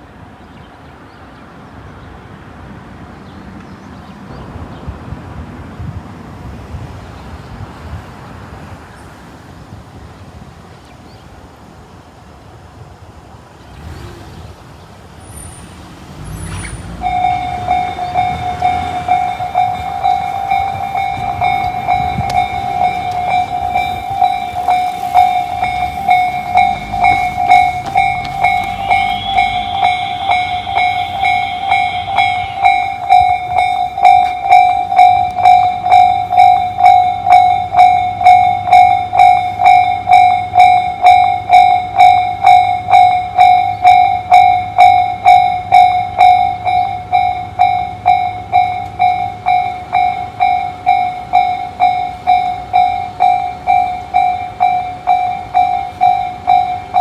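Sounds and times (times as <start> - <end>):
low road traffic rumble: 0.0 - 57.0
level-crossing electronic alarm: 16.8 - 57.0.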